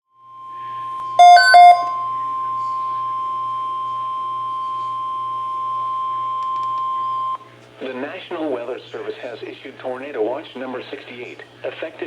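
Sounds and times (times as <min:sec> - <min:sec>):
single-pitch warning alarm tone: 0:00.3 - 0:06.4
short loud electronic beeps: 0:01.2 - 0:02.0.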